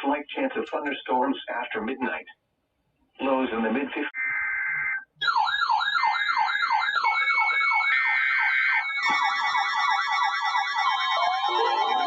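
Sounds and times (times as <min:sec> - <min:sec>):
high warbling siren tone: 0:04.2 - 0:12.0
siren sweeping down: 0:04.2 - 0:12.0.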